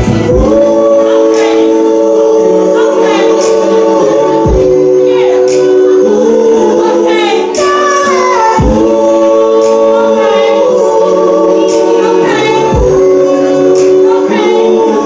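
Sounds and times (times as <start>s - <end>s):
slow drum beat: 0.0s - 2.0s, 2.6s - 6.1s, 7.5s - 10.0s, 11.6s - 14.1s
voices singing in harmony: 0.0s - 15.0s.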